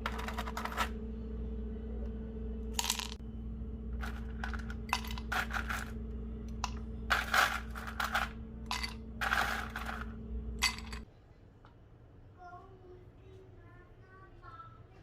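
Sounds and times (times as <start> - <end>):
steady hum: 0.0 - 11.1.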